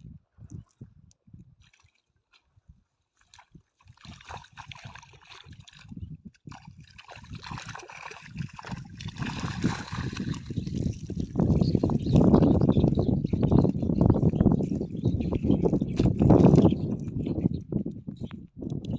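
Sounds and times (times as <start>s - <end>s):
water sloshing and splashing: 1.6s - 12.4s, 15.6s - 17.2s.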